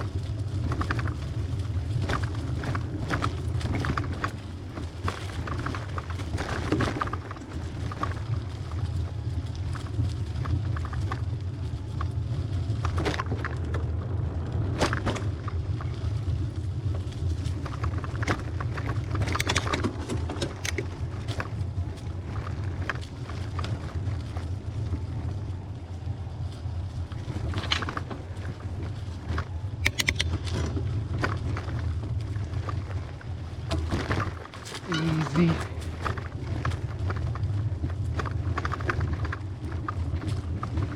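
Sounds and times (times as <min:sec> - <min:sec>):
bicycle clicks and rattles: 0:00.0 - 0:40.9
wind and riding noise: 0:00.0 - 0:40.9.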